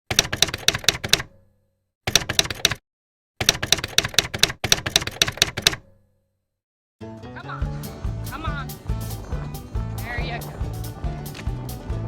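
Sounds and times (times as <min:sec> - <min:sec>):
typewriter keys clacking: 0:00.1 - 0:01.3, 0:02.1 - 0:02.8, 0:03.4 - 0:05.8.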